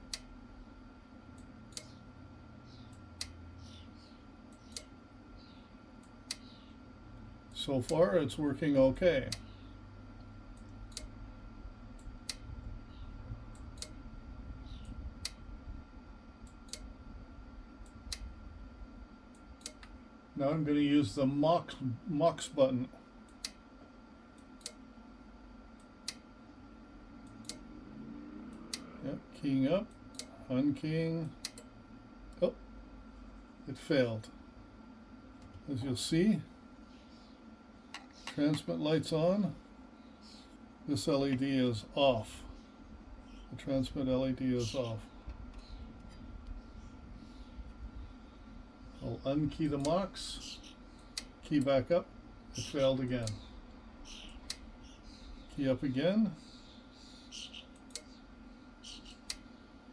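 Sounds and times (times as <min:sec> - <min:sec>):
faint steady hum: 0:00.0 - 0:59.9
sharp clicks: 0:10.6 - 0:11.2, 0:27.2 - 0:27.7, 0:57.3 - 0:58.2.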